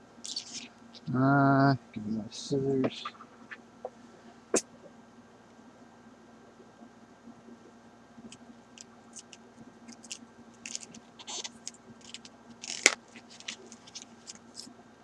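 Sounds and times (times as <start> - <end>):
scissors snipping package: 9.9 - 14.7.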